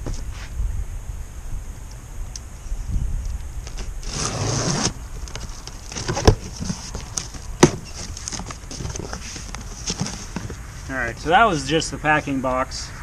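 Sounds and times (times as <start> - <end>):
cardboard box scraping: 3.6 - 10.9.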